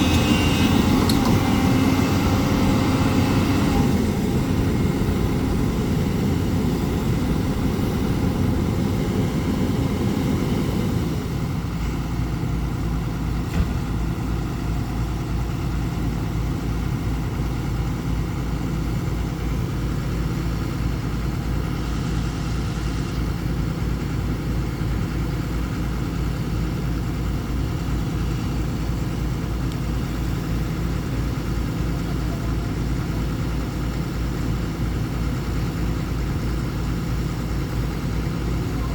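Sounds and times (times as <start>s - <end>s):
excavator diesel engine running: 0.0s - 38.9s.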